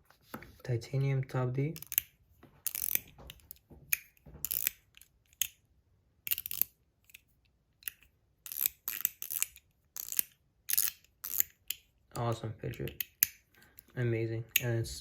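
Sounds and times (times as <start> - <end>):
spinning top scraping and clicking: 1.8 - 5.5, 7.8 - 11.8.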